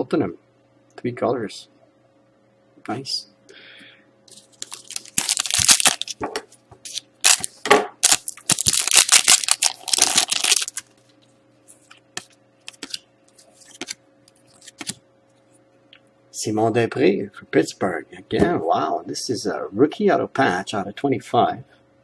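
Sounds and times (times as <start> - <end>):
wrapper crinkling and tearing: 4.3 - 6.2, 6.8 - 10.9.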